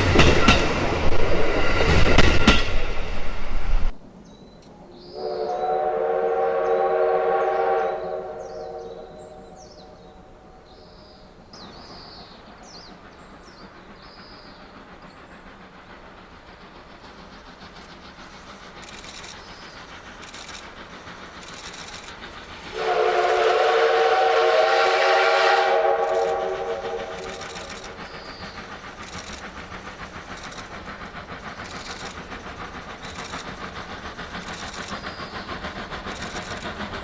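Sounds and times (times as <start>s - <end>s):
steam locomotive exhaust chuffs: 0.0s - 37.0s
steam whistle blowing: 5.1s - 10.7s, 22.7s - 27.9s.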